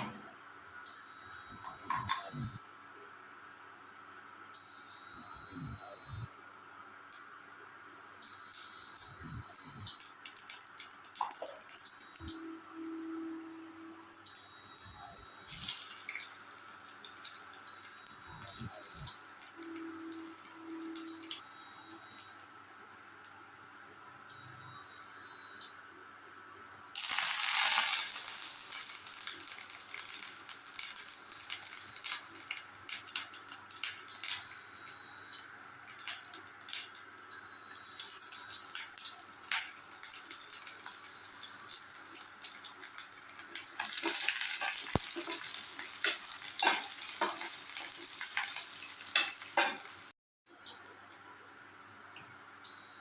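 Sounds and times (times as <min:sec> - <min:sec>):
crackles and pops of frying: 0:08.2 - 0:12.4, 0:14.2 - 0:21.4, 0:26.9 - 0:51.0
vegetables sizzling in oil: 0:27.0 - 0:34.5, 0:37.8 - 0:50.1.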